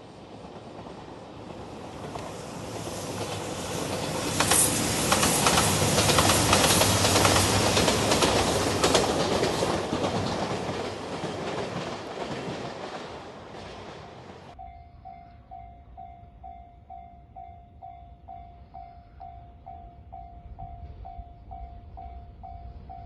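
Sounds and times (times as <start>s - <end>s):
train wheels clacking over rail joints: 0.5s - 14.5s
level crossing warning bell: 14.6s - 23.0s.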